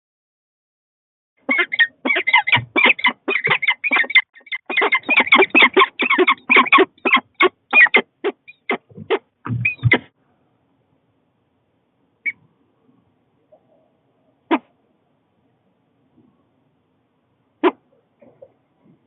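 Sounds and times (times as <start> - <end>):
goose honking: 1.5 - 10.1.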